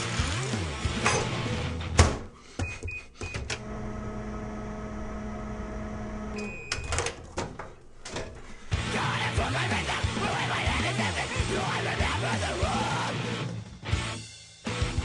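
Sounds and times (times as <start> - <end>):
microwave humming: 0.9 - 8.7
door clicks and knocks: 1.0 - 2.3
keypad beeps: 6.4 - 7.0.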